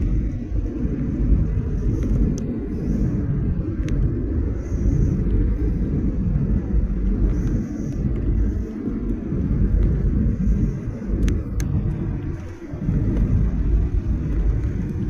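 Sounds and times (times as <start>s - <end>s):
airplane cabin rumble: 0.0s - 15.0s.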